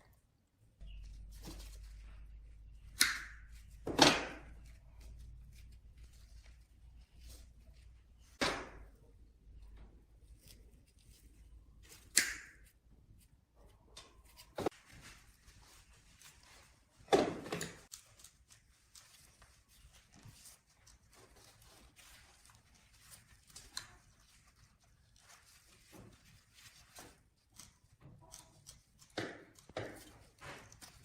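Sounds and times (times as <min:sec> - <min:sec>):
objects knocking and clunking: 0:17.0 - 0:17.9.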